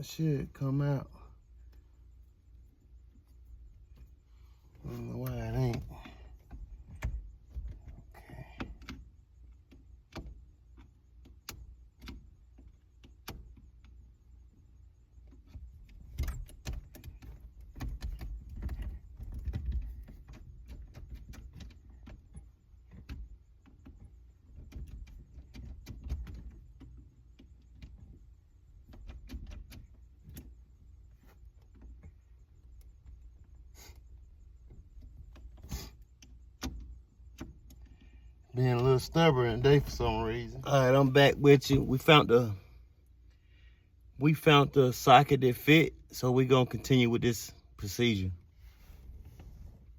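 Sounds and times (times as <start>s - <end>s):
low handling rumble: 38.4s - 42.8s.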